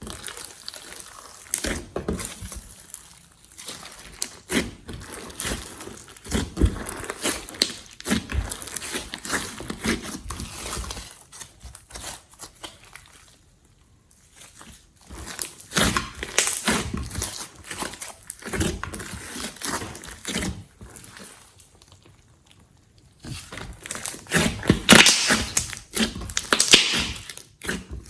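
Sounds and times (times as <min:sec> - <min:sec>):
slime squelching clicks and snaps: 0:24.9 - 0:25.8, 0:26.4 - 0:27.3.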